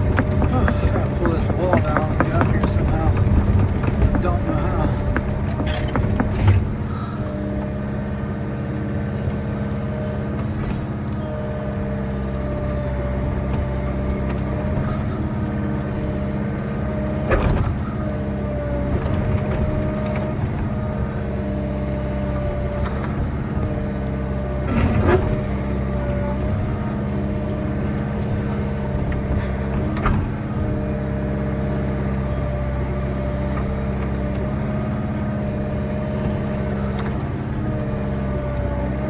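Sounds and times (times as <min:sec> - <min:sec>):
short knocks: 0:00.0 - 0:07.6
diesel engine running: 0:00.0 - 0:39.0.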